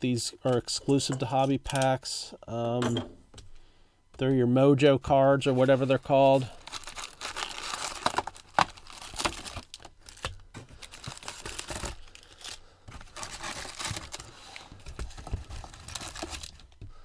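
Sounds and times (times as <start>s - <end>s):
foil wrappers crinkling: 5.4s - 16.8s.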